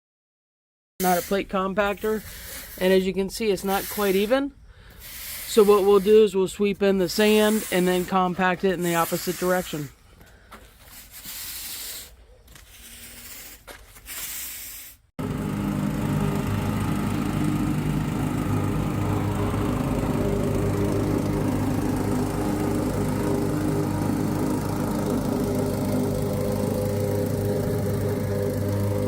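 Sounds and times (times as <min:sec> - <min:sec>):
broom sweeping sand: 0:01.0 - 0:10.0, 0:10.8 - 0:15.1
plate compactor engine running: 0:15.2 - 0:29.0.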